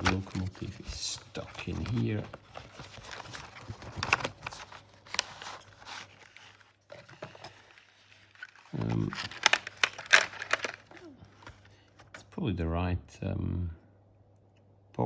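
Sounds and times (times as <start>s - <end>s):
box packaging clicks and crinkling: 0.0s - 12.2s.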